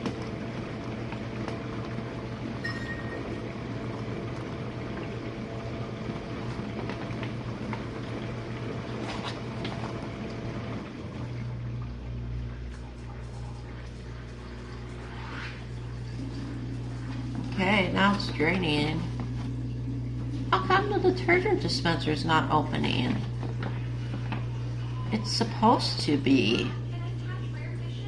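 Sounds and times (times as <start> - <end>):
dishwasher pump motor hum: 0.0 - 28.0
water spraying and sloshing: 4.3 - 25.5.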